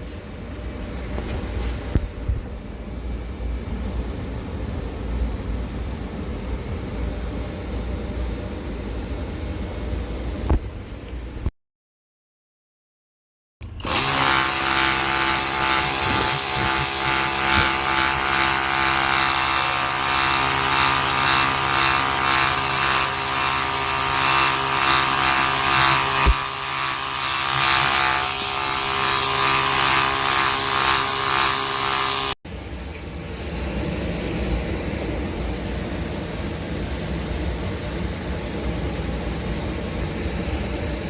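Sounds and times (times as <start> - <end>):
air conditioner whirring hum: 0.0 - 11.5, 32.5 - 41.0.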